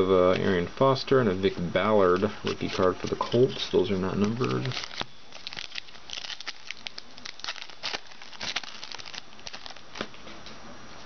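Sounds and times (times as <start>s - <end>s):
trading cards rustling and clicking: 2.0s - 10.2s.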